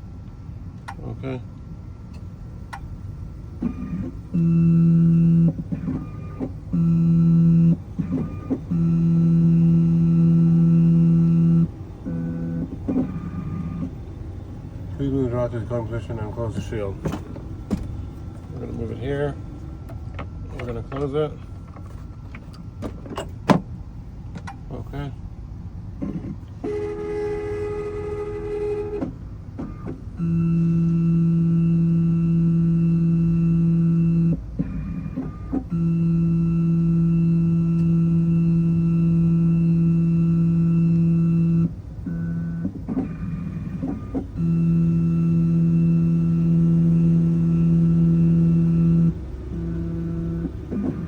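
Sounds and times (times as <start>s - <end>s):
key-cutting machine motors whining: 2.8s - 17.8s, 26.0s - 51.0s.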